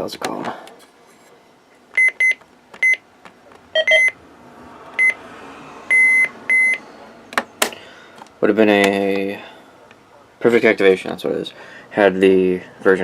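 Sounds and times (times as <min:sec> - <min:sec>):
weather radio receivers beeping: 0:02.0 - 0:03.0, 0:03.8 - 0:04.2, 0:05.9 - 0:06.8
two-tone chirp: 0:03.8 - 0:04.2.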